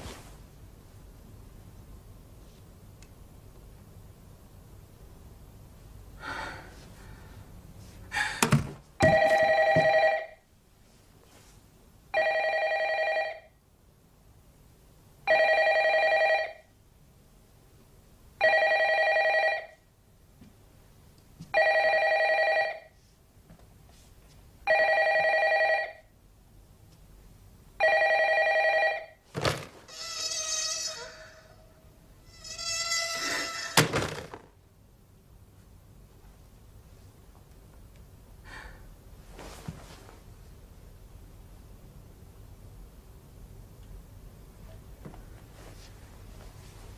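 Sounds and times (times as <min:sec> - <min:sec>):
telephone ringing: 0:09.0 - 0:10.4, 0:12.2 - 0:13.6, 0:15.3 - 0:16.6, 0:18.4 - 0:19.8, 0:21.6 - 0:22.9, 0:24.7 - 0:26.1, 0:27.8 - 0:29.2.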